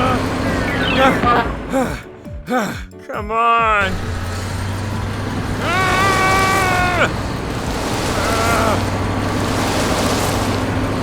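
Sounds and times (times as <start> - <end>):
rumbling engine-like noise: 0.0 - 2.0, 3.8 - 11.0
cartoon character straining cry: 5.6 - 7.1.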